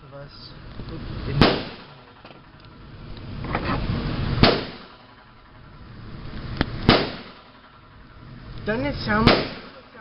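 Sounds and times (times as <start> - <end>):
rifle gunshots: 1.4 - 1.9, 4.4 - 5.0, 6.8 - 7.4, 9.2 - 9.8.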